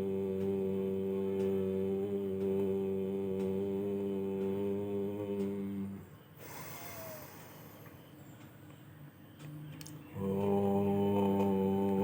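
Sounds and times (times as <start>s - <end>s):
person chanting: 0.0s - 7.4s, 9.4s - 12.0s
person breathing in: 6.4s - 7.9s.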